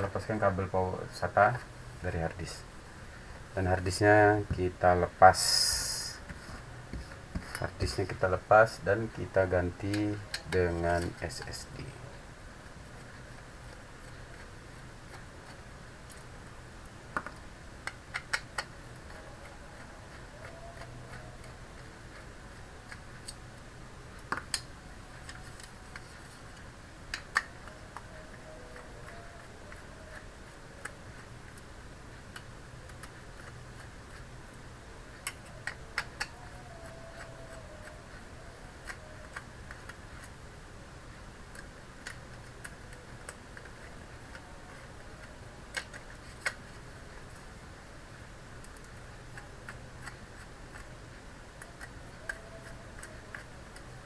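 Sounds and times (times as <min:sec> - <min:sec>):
faint low hum: 0:00.0 - 0:54.0
hands clicking and tapping hardware: 0:06.9 - 0:11.8, 0:35.2 - 0:38.0.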